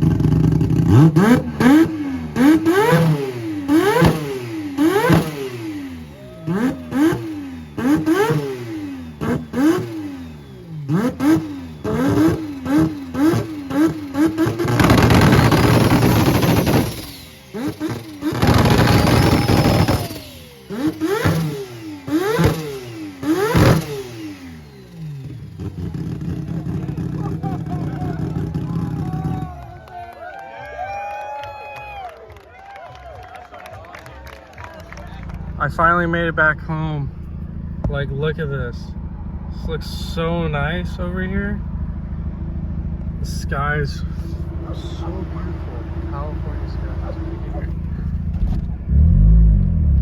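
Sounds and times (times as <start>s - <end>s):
sharp exhaust pops: 0.0s - 5.9s, 6.5s - 10.0s, 10.9s - 24.4s
rotary engine revving: 0.0s - 29.9s, 34.8s - 50.0s.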